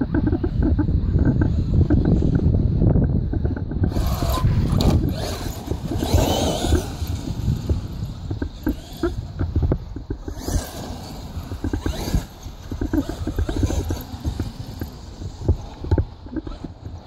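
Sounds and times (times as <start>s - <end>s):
rc truck rattling over rough ground: 0.0s - 17.0s
motor whine: 3.6s - 17.0s.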